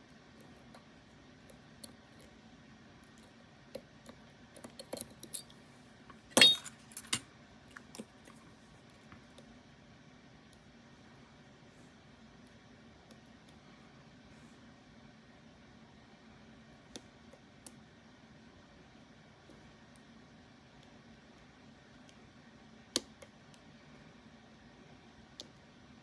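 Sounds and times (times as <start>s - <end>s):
metal lock parts clicking: 4.5s - 5.5s, 6.3s - 7.2s
ringing metallic clink: 6.4s - 7.2s.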